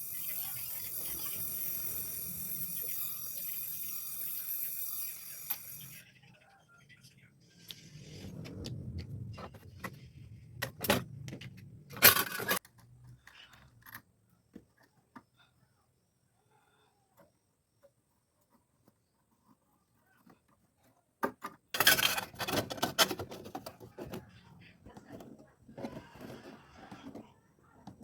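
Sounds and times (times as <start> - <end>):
low rumble: 7.8 - 12.0.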